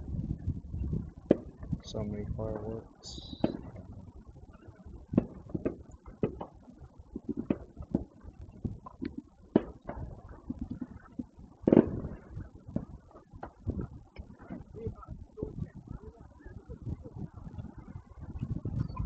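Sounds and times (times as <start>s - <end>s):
fireworks bangs and pops: 0.0s - 3.9s, 4.6s - 15.8s.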